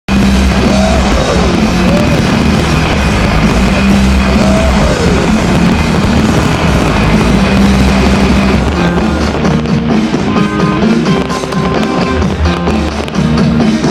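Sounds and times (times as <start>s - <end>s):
gliding tones: 0.1s - 13.2s
loud music with held bass: 0.1s - 13.9s.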